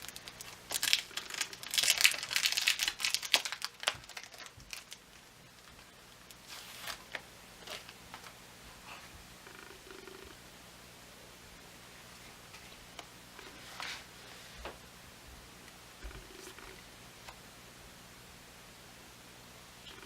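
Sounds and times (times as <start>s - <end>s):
sticker bag crinkling: 0.0s - 8.3s.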